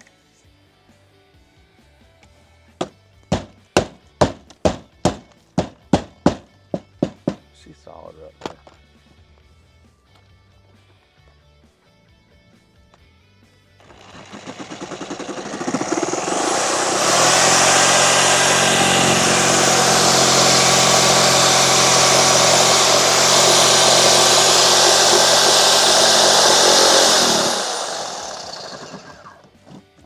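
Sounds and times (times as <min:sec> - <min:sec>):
motor-driven machine running: 0:13.8 - 0:29.4.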